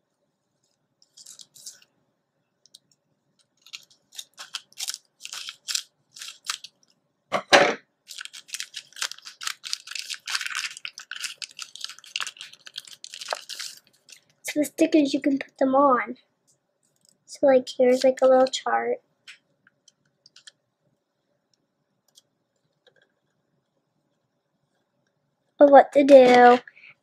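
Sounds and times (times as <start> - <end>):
paper and plastic crinkling: 0.6 - 1.9, 3.4 - 7.0, 8.1 - 14.4, 26.0 - 26.7.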